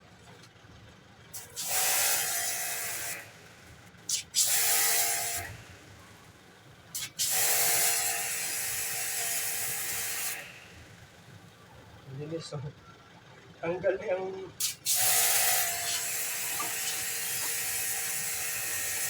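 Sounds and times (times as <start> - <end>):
pressure washer spraying: 1.4 - 3.5, 4.1 - 5.9, 7.0 - 10.9, 14.6 - 19.0
pressure washer hum: 1.4 - 11.5, 14.5 - 19.0.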